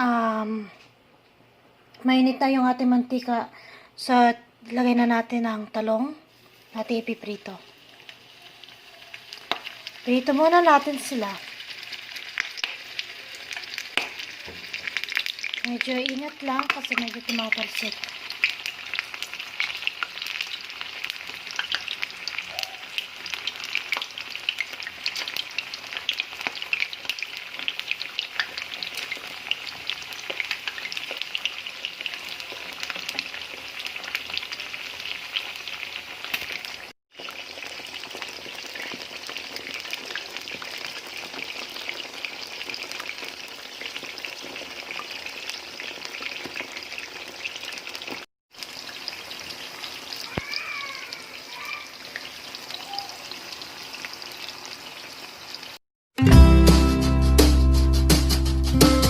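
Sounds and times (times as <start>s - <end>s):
eggplant sizzling in oil: 4.0s - 55.8s.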